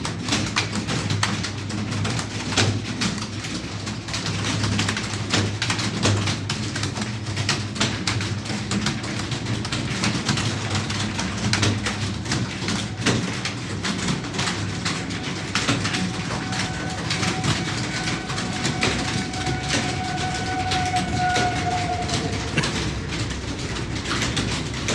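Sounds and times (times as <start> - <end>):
keyboards clattering: 7.3 - 24.9
steady tone: 14.4 - 24.8.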